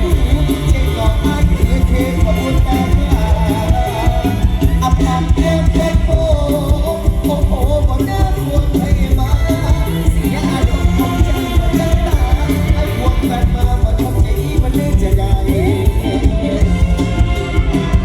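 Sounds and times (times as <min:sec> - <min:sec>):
amplified stage-show music: 0:00.0 - 0:18.0.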